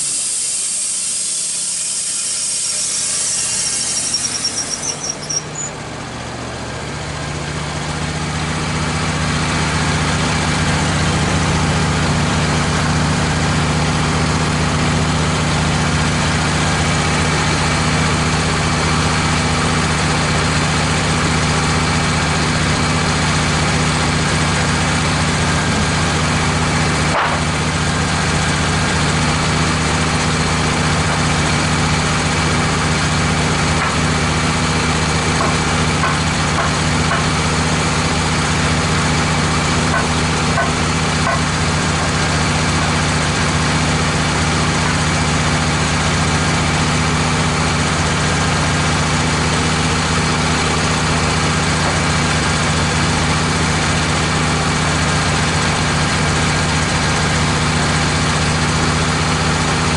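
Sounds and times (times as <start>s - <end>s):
hiss: 0.0s - 5.5s
sawmill gas engine running: 0.0s - 59.9s.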